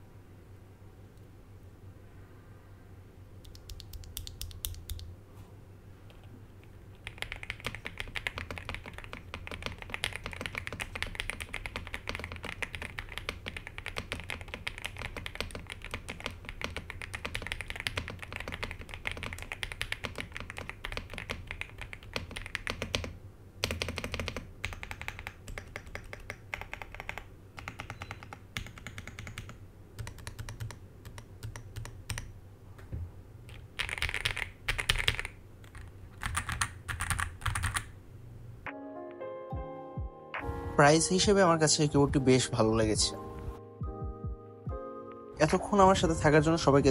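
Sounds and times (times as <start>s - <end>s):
mechanical keyboard typing: 3.4s - 5.1s, 6.9s - 32.3s, 33.5s - 37.9s.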